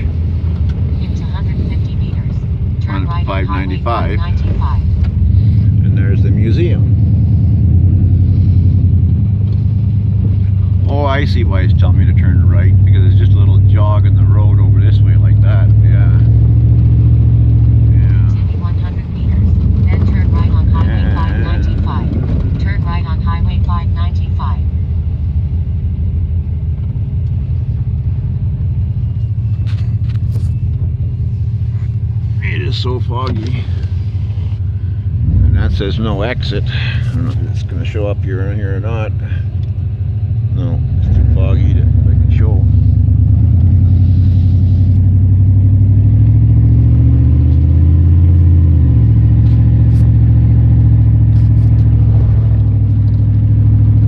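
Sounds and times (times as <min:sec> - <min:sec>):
engine and road noise in car cabin: 0:00.0 - 0:54.0.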